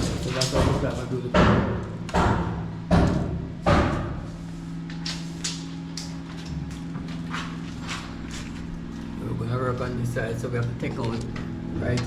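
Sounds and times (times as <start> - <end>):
heavy knocks: 0.0 - 4.2
steady low hum: 0.0 - 12.0.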